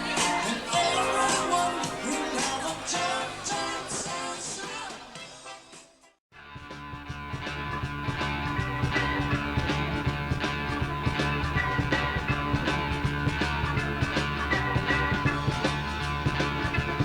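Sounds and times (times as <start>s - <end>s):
rock music with drums and bass: 6.4s - 17.0s.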